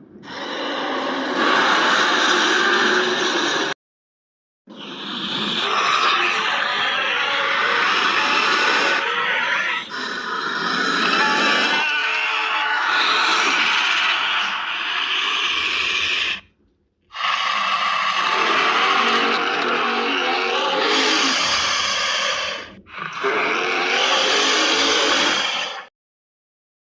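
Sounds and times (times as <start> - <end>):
harsh monster sound effects: 5.2 - 16.5, 17.1 - 25.9.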